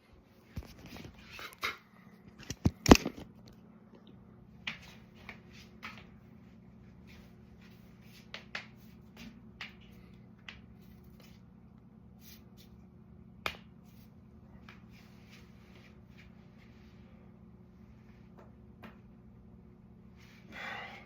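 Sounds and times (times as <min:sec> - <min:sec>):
faint low hum: 0:00.0 - 0:21.0.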